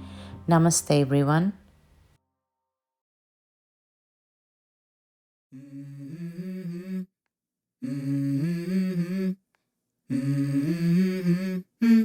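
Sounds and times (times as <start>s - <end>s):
person humming melody: 5.6s - 7.1s, 7.8s - 9.4s, 10.1s - 12.0s.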